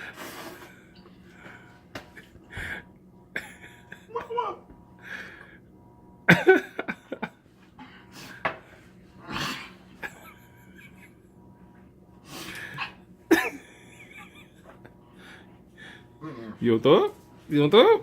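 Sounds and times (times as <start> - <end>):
man coughing: 13.3 - 13.8.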